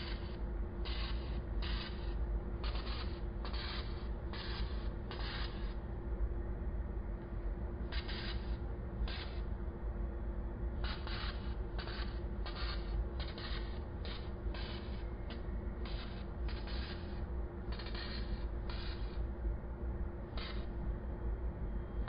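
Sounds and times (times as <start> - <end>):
laser buzzing bursts: 0.0 - 5.8, 7.9 - 9.5, 10.8 - 19.2
fan hum: 0.0 - 22.0.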